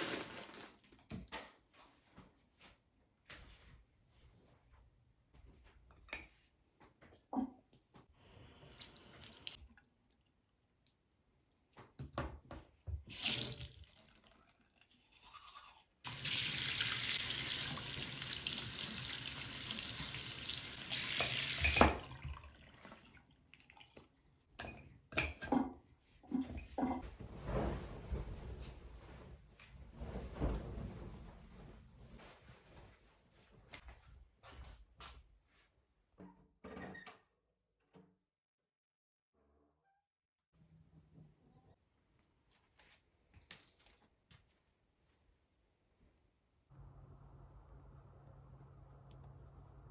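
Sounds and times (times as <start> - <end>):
tap water running into sink: 13.1 - 14.0, 16.1 - 23.1.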